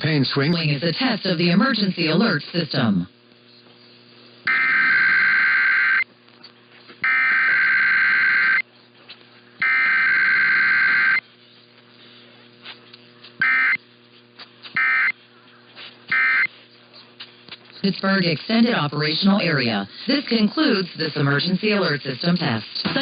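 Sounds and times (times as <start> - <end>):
faint mains hum: 0.0 - 23.0
buzzy two-tone digital chirping: 13.4 - 13.8.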